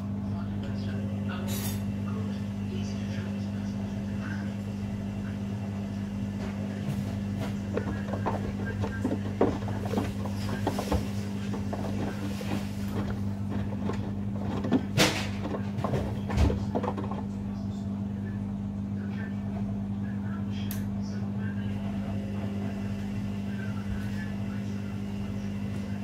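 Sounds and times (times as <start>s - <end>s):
washing machine motor hum: 0.0s - 26.0s
clunks from tumbling drums: 6.4s - 17.5s.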